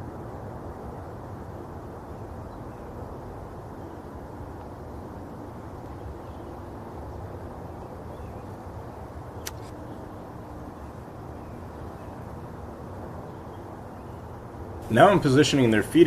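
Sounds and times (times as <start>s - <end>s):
low outdoor background noise: 0.0s - 16.0s
sharp click: 9.4s - 9.8s.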